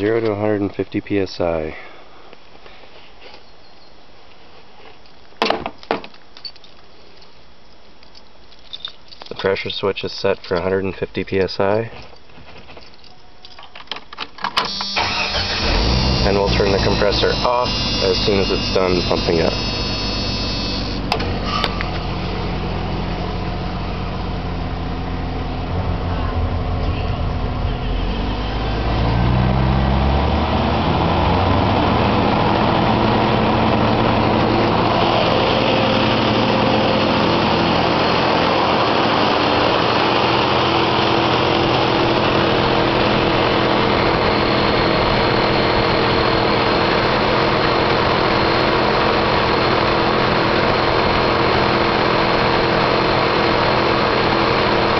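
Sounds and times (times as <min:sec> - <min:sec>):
engine running: 0:15.0 - 0:54.9.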